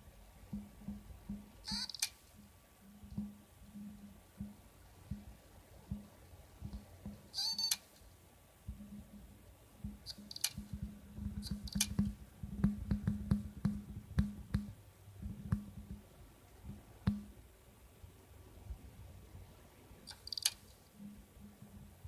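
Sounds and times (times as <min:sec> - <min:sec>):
hard disk clicking: 0:09.9 - 0:14.7.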